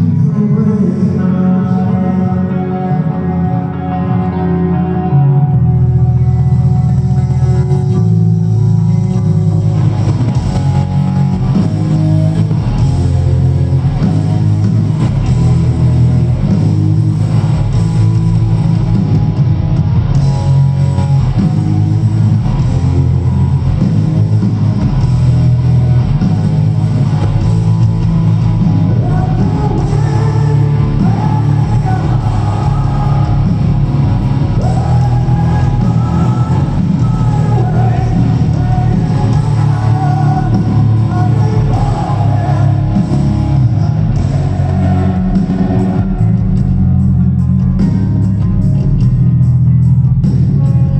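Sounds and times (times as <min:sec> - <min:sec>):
lead vocal singing: 0:00.0 - 0:05.1, 0:28.8 - 0:47.1
rock band playing: 0:00.0 - 0:50.9.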